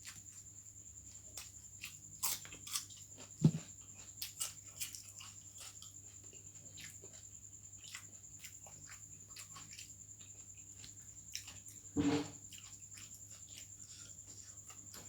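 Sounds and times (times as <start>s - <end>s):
chewing with crunches: 0.0s - 15.0s
dull thump: 12.0s - 12.4s.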